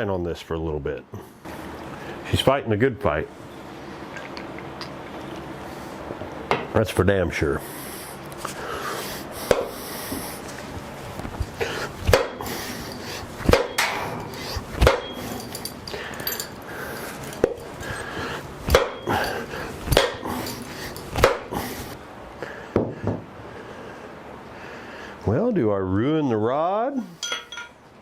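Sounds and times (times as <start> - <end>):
hammer beating on metal: 12.1 - 12.4, 13.5 - 15.7, 18.7 - 19.1, 19.9 - 20.3.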